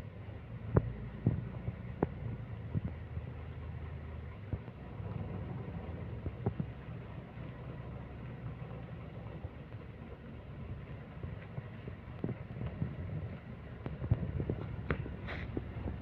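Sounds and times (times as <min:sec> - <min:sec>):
bus diesel engine running: 0:00.0 - 0:16.0.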